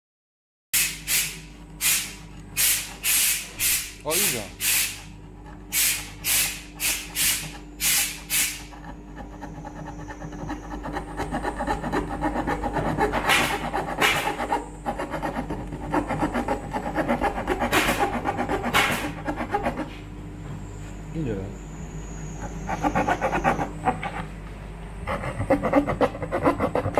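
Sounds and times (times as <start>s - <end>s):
saw cutting through wood: 7.9s - 19.8s.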